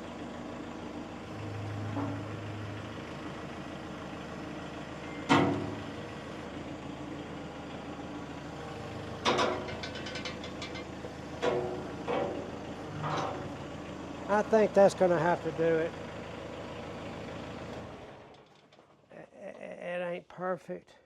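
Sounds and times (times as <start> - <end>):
tractor engine running: 0.0 - 19.1
rattling clatter: 9.2 - 13.5.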